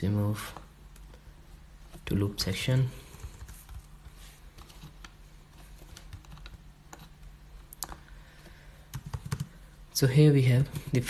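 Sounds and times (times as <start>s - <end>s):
low steady hum: 0.0s - 11.0s
computer keyboard clicks: 5.9s - 7.1s, 8.9s - 9.6s.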